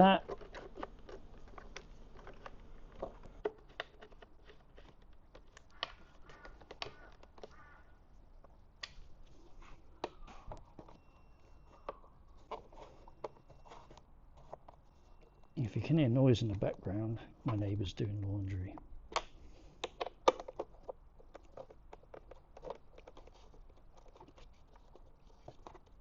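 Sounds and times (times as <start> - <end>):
clicks and knocks of small parts: 0.2 - 7.6, 18.7 - 26.0.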